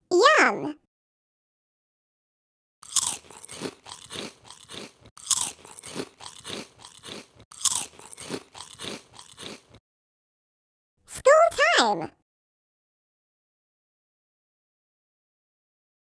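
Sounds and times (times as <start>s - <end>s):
crackly chewing: 2.8s - 9.8s
crunching bites: 2.8s - 9.8s.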